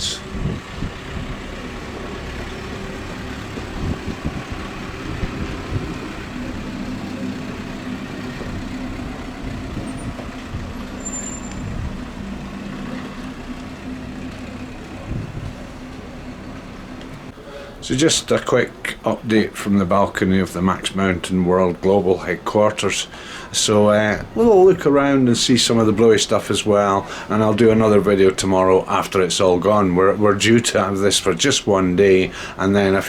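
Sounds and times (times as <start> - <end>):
wind buffeting microphone: 0.0 - 17.4
vehicle engine humming: 0.0 - 33.0.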